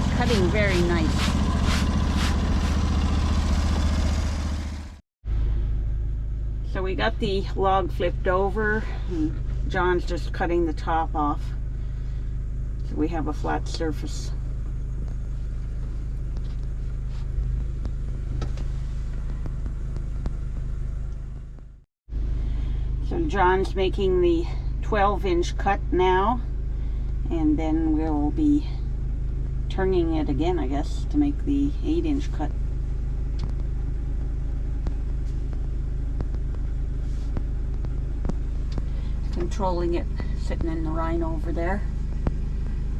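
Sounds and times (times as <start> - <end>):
band sawmill cutting log: 0.0 - 4.9.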